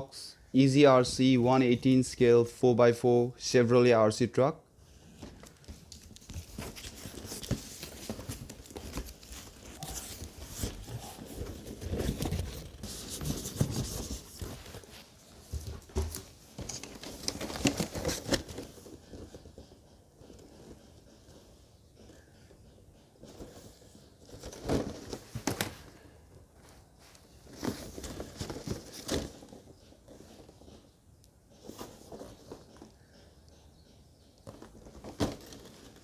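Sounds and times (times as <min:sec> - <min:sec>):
cardboard and plastic packaging rustling: 0:04.9 - 0:22.5, 0:23.2 - 0:31.0, 0:31.6 - 0:33.2, 0:34.4 - 0:36.0.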